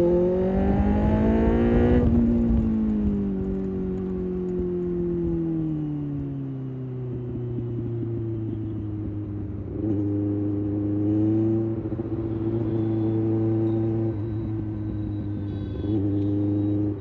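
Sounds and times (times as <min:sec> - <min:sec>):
motorcycle engine revving: 0:00.0 - 0:06.2, 0:06.8 - 0:17.0.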